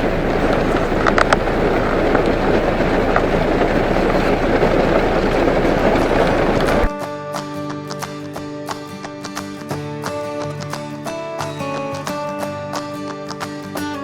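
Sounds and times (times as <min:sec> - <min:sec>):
heavy rain: 0:00.0 - 0:06.9.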